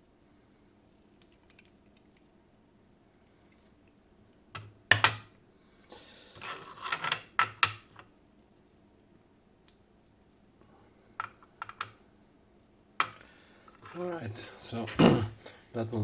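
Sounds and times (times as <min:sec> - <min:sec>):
small metal parts clicking: 0:01.2 - 0:02.3.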